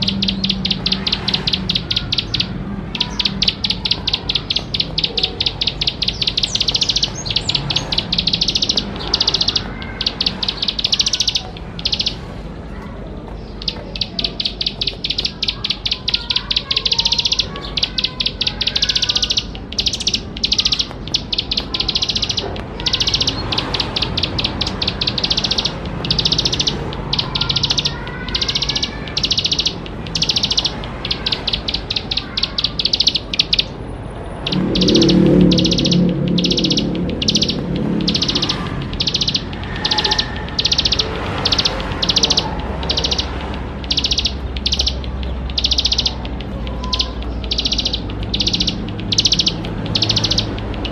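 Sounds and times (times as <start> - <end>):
bird singing rapid trills: 0.0 - 50.9
low rumble: 33.8 - 39.7.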